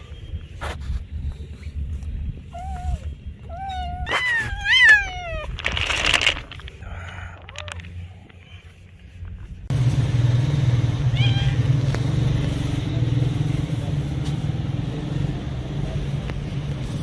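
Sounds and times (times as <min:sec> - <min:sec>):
cat meowing: 0:11.1 - 0:11.7.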